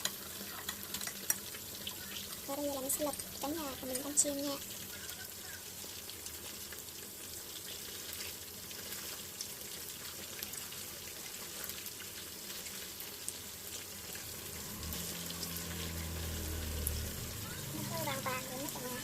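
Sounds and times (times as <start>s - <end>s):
food sizzling in hot oil: 0.0s - 19.0s
low hum: 14.2s - 19.0s.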